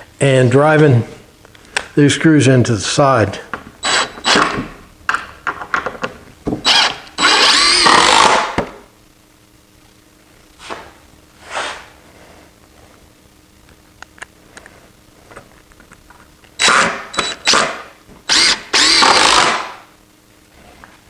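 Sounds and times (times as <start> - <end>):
power drill driving screws into wood: 3.8 - 4.7, 6.6 - 8.8, 16.6 - 19.8.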